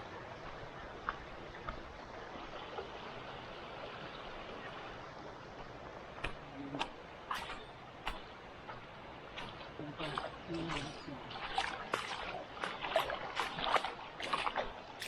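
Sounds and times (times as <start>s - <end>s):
mountain stream flowing: 0.0s - 15.0s.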